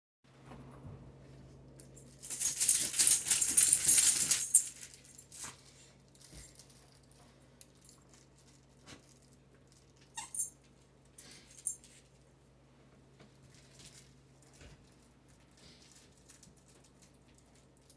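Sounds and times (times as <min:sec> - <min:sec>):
squeaky dog toy squeaks: 0:10.2 - 0:10.5.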